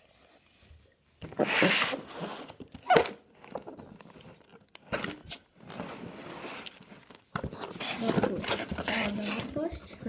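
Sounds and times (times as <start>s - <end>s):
clicks and cardboard rustling: 3.4s - 10.0s.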